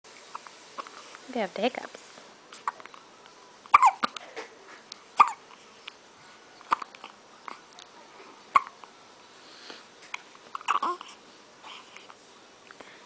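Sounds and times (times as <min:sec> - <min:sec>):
baby hiccupping: 0:02.5 - 0:02.9, 0:03.7 - 0:04.2, 0:05.2 - 0:05.6, 0:06.6 - 0:07.8, 0:08.5 - 0:08.8, 0:10.1 - 0:12.1.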